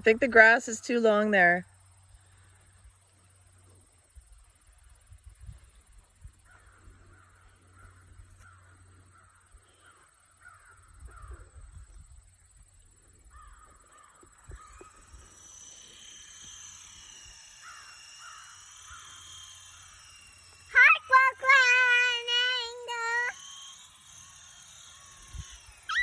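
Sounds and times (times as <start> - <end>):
toy helicopter motor whine: 0.0 - 26.0
bird cawing: 6.5 - 11.4, 13.3 - 15.0, 17.5 - 20.2.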